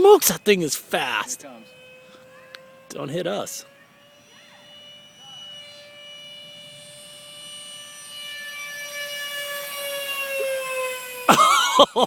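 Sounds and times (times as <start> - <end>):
model jet fan whine: 0.0 - 12.0.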